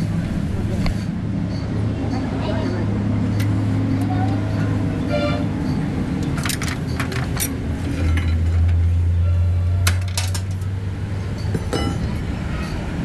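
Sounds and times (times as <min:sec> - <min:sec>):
metal clinking and clanking: 0:05.6 - 0:09.0, 0:09.8 - 0:10.7, 0:11.3 - 0:12.8.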